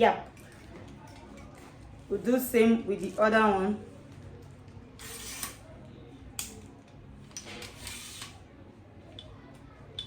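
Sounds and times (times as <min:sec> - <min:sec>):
tripod leg scraping: 0:07.6 - 0:08.4.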